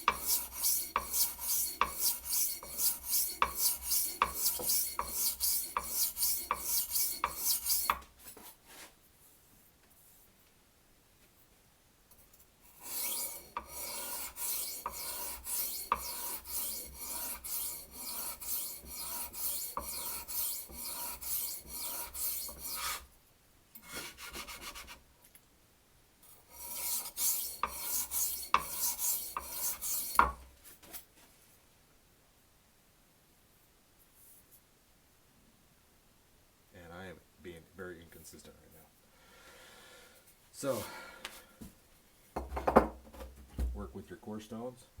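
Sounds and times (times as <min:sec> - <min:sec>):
knife scraping on sharpening stone: 0:00.0 - 0:08.4, 0:12.8 - 0:23.0, 0:26.5 - 0:30.4.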